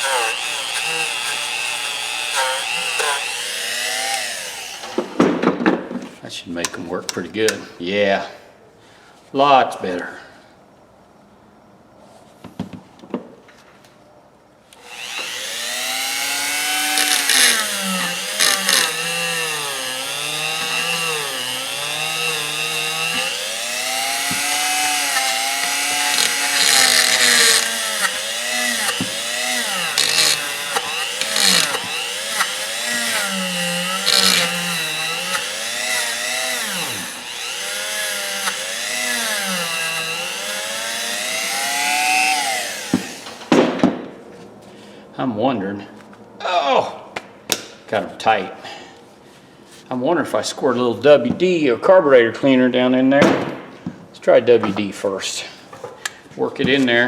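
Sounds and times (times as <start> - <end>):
small electric power tool running: 0.0 - 5.2, 14.8 - 43.5.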